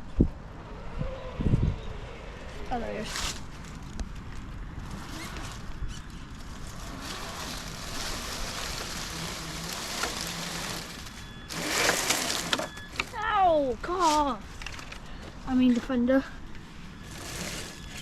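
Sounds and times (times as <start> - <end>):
wind buffeting microphone: 0.0 - 2.1.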